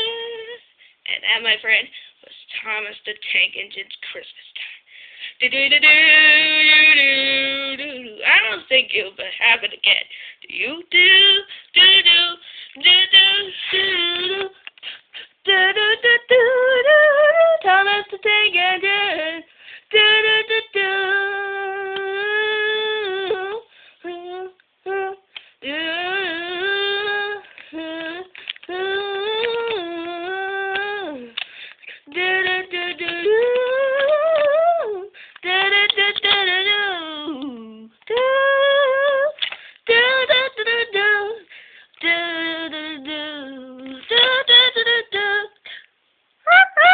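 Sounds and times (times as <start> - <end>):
child singing wordless tune: 32.0 - 41.4.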